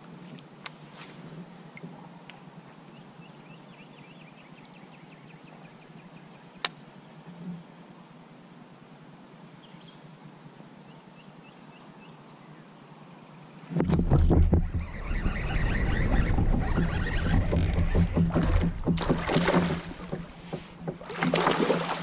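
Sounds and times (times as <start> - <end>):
faint bird chirps: 14.6 - 17.4.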